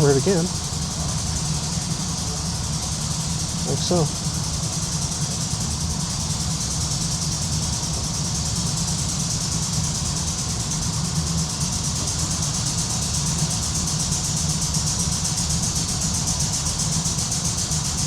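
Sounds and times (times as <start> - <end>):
low machine hum: 0.0 - 4.8.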